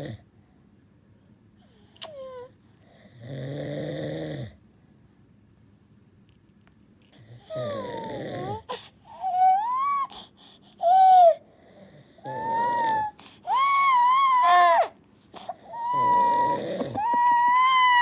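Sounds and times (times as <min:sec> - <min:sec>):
baby crying: 0:07.5 - 0:10.2, 0:10.8 - 0:11.4, 0:12.2 - 0:18.0.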